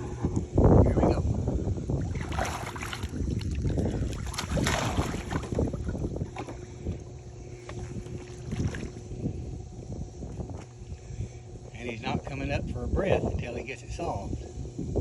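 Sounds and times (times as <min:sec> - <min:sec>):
wind buffeting microphone: 0:00.0 - 0:15.0
pool water splashing: 0:02.0 - 0:06.4.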